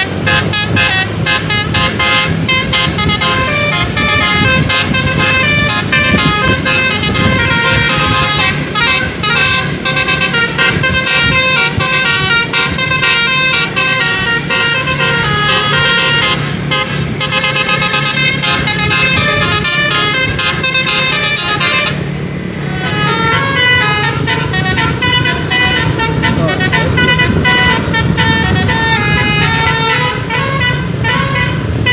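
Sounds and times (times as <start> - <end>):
bus engine hum: 0.0 - 31.9
musical air horn melody: 0.0 - 31.9.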